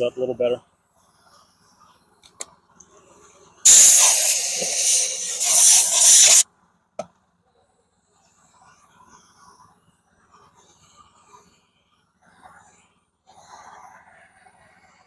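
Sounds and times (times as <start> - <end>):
compressed gas hissing: 3.7 - 6.4.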